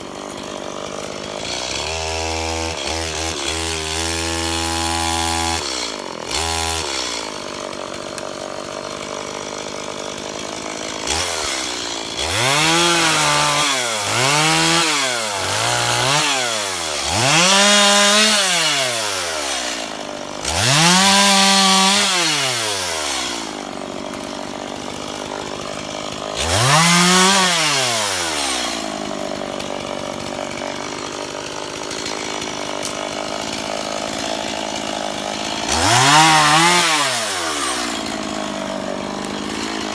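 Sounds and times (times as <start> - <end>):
chainsaw revving: 0.0 - 39.9.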